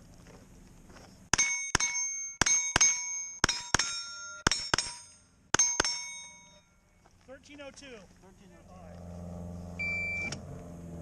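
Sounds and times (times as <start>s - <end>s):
steel plate ringing: 1.3s - 6.8s.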